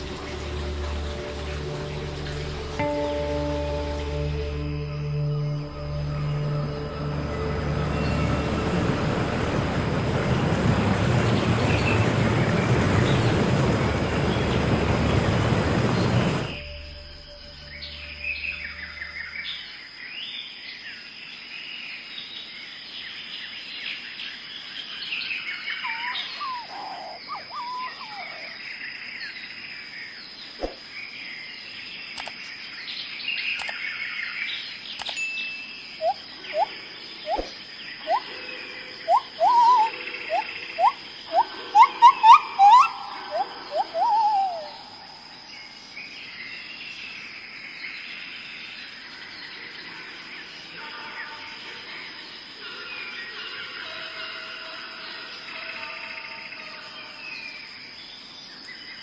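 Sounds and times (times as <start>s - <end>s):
steady high-pitched tone: 2.8s - 10.0s
small birds chirping: 25.2s - 35.2s, 35.9s - 47.2s
bird calling short rising notes: 25.8s - 28.6s, 36.0s - 38.3s, 39.1s - 45.5s.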